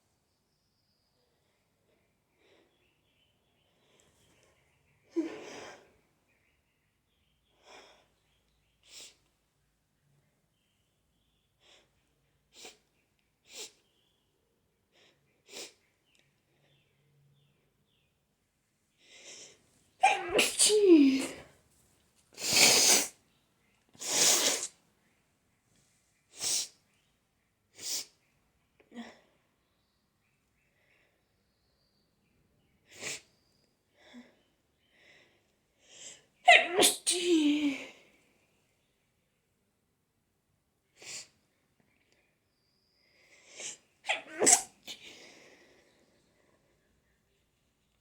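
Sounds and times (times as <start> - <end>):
person sneezing: 20.0 - 21.4, 22.4 - 23.1, 24.0 - 24.7, 36.5 - 37.9, 44.1 - 45.1.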